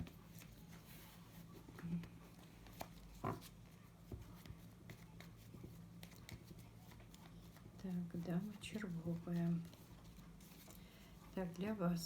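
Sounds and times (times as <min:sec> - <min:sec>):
faint low hum: 0:00.0 - 0:12.0
playing cards tapping and clicking: 0:02.0 - 0:07.9.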